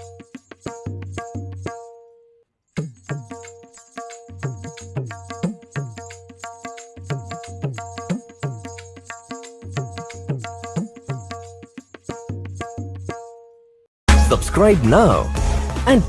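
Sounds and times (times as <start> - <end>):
treble drum ringing: 2.8 - 13.5.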